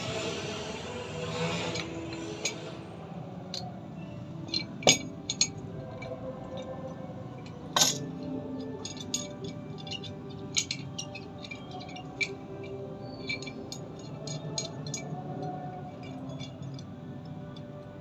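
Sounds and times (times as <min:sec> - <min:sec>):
hard objects clinking and tapping: 0:04.5 - 0:06.7, 0:07.4 - 0:17.7.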